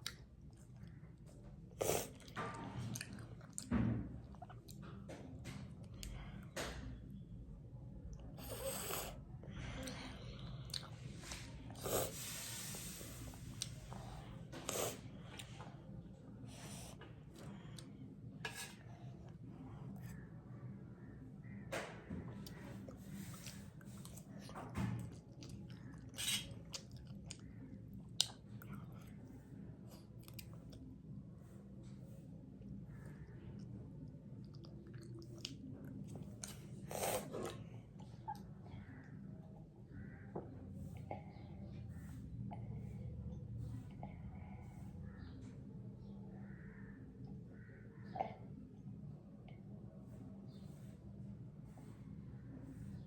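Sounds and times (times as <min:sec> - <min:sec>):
person chewing noodles: 0:09.8 - 0:15.5, 0:22.9 - 0:24.5, 0:25.4 - 0:29.2, 0:29.9 - 0:30.9, 0:34.4 - 0:38.5.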